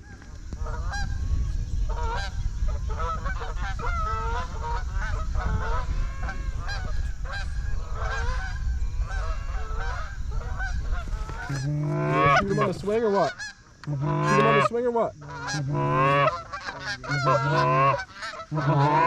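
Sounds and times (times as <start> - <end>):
steady low rumble: 0.0 - 13.0
geese honking: 0.0 - 19.0.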